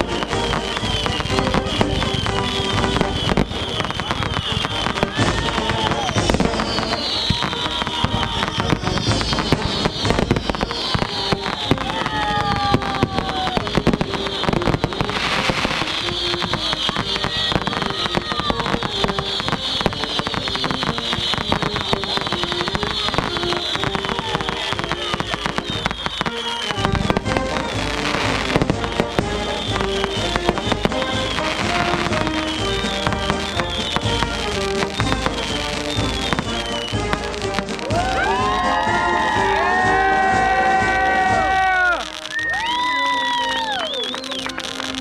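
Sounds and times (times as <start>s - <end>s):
firework whistles: 0.0s - 45.0s
fireworks crackling and popping: 0.0s - 45.0s
music playing: 0.0s - 45.0s.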